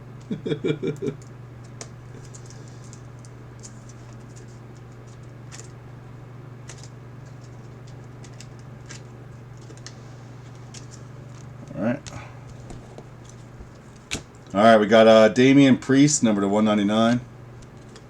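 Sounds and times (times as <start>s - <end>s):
steady low hum: 0.0s - 18.0s
cards flicking and clicking: 0.2s - 5.8s, 6.6s - 14.5s.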